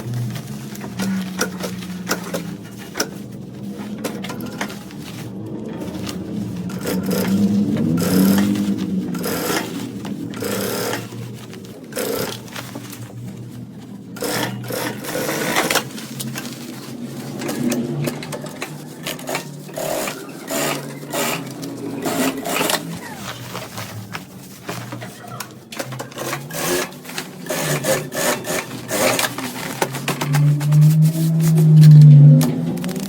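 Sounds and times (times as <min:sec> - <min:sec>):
sewing machine stitching: 0:05.7 - 0:13.0, 0:14.2 - 0:33.0.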